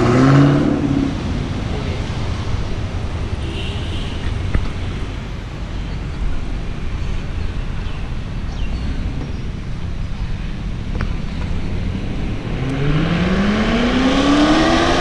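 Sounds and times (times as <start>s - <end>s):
street traffic rumble: 0.0s - 15.0s.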